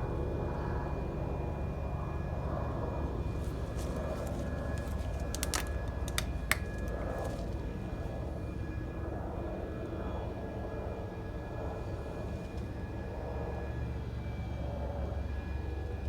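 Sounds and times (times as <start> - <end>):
sharp clicks and taps: 4.7 - 7.0.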